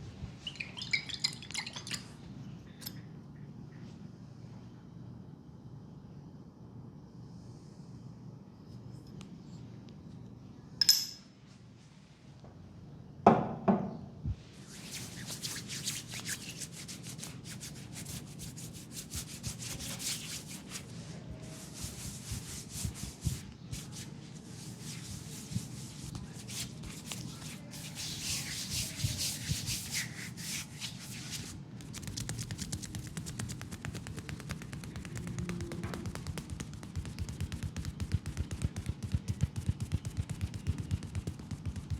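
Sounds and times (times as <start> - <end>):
hands rubbing skin: 14.7 - 41.9.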